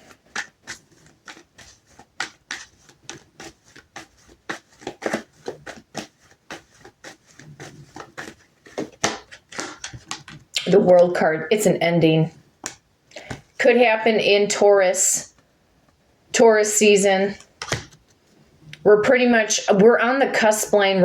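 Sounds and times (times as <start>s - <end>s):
cards being shuffled: 0.0s - 10.7s, 12.6s - 13.6s, 17.3s - 18.4s.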